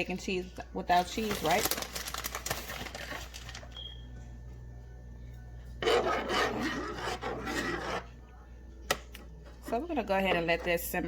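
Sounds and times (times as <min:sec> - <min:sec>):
utensil scraping a pot: 0:05.8 - 0:08.2.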